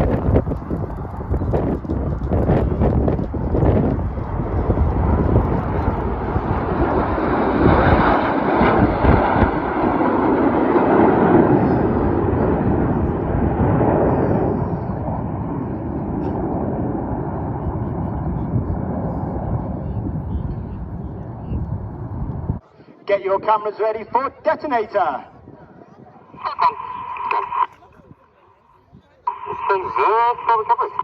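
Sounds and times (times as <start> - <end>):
jets flying past: 0.0 - 22.6.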